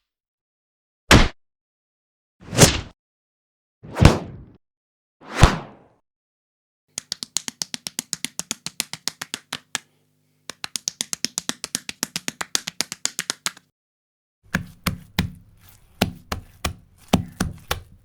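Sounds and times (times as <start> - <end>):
rapid slaps: 6.9 - 9.9, 10.5 - 13.7, 14.5 - 18.0.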